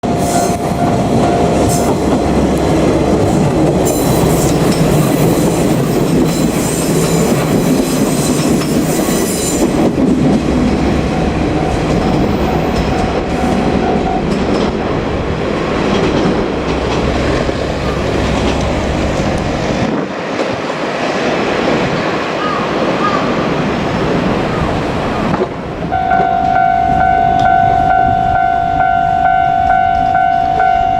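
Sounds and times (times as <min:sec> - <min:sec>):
diesel railcar engine: 0:00.0 - 0:30.9
wheels clattering over rail joints: 0:01.2 - 0:23.1.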